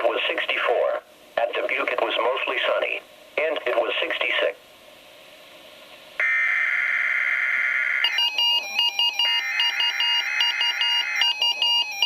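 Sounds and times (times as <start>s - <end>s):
electronic alert tune beeping: 8.0s - 12.0s.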